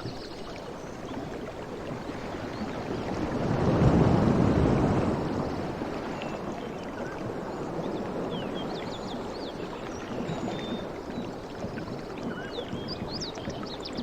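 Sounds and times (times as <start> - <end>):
sea waves washing on shore: 0.0 - 14.0.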